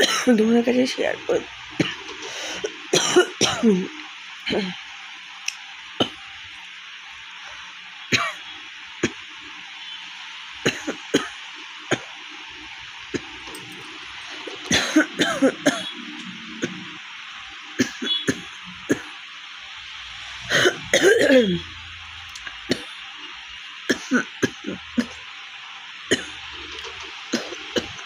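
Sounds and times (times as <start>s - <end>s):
woman coughing: 0.0s - 0.4s, 2.6s - 3.9s, 4.5s - 4.8s, 8.1s - 8.4s, 10.7s - 11.4s, 14.7s - 15.9s, 20.5s - 21.6s, 23.9s - 25.2s.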